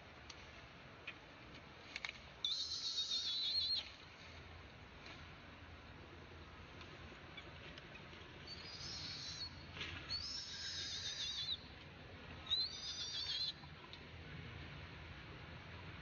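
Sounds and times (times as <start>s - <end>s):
baby monkey squeaking: 2.5s - 3.8s, 8.5s - 9.5s, 10.1s - 11.6s, 12.5s - 13.5s.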